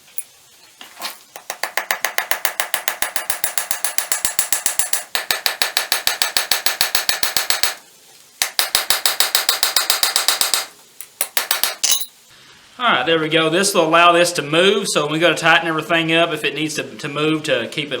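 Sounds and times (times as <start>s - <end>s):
small hammer tapping on steel: 1.4s - 7.8s, 8.4s - 12.1s.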